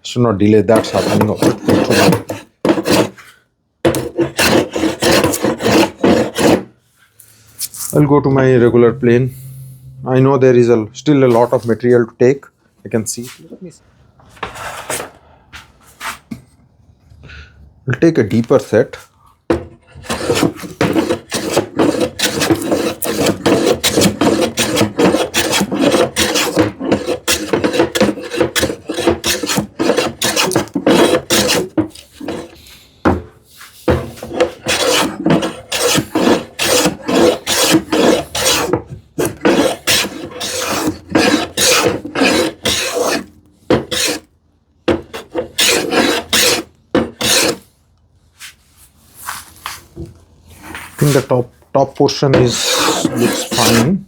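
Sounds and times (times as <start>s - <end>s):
hand plane shaving wood: 0.7s - 3.2s, 3.9s - 6.7s, 19.7s - 32.6s, 33.9s - 44.3s, 44.9s - 47.6s, 52.3s - 54.0s.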